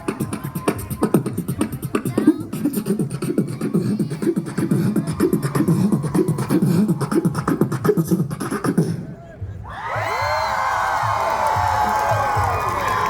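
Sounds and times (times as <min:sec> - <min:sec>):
person beatboxing: 0:00.0 - 0:09.6.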